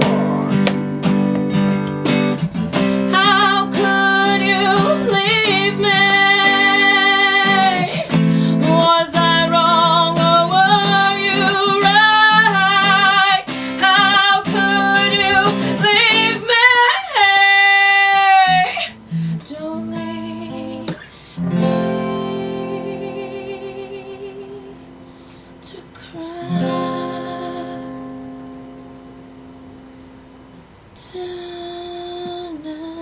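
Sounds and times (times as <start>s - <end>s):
strummed guitar: 0.0s - 30.8s
person singing wordless notes: 21.6s - 24.8s.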